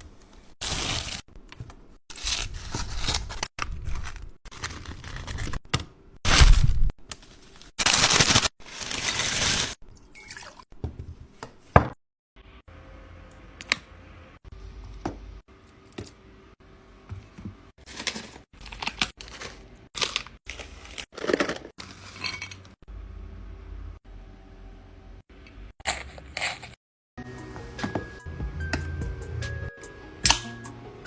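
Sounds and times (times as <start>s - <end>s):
crinkling: 17.8s - 22.1s.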